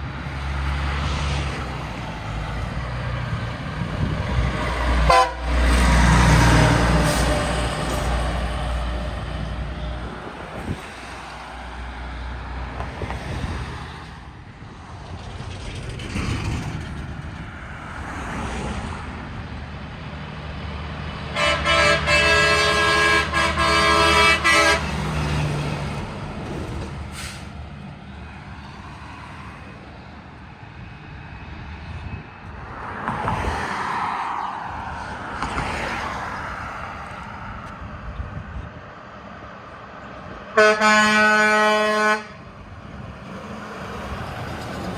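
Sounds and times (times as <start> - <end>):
road traffic: 0.0 - 44.9
train horn blasts: 4.9 - 7.4, 21.3 - 25.2, 40.5 - 42.4.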